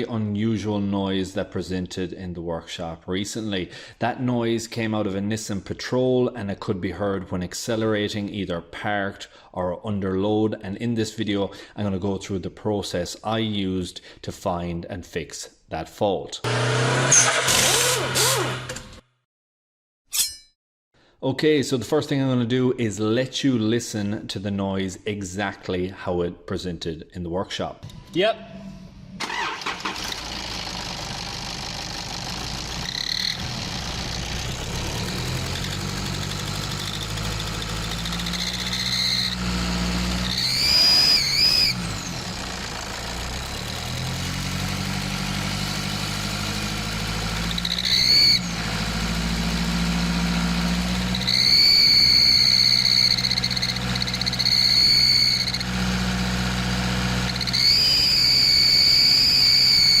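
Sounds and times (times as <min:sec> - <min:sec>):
diesel engine revving: 0:16.4 - 0:18.7, 0:29.2 - 1:00.0
loud high-pitched squeal: 0:16.5 - 0:18.8, 0:32.8 - 0:33.7, 0:36.7 - 0:42.2, 0:47.4 - 0:48.8, 0:51.0 - 0:55.8, 0:57.2 - 1:00.0.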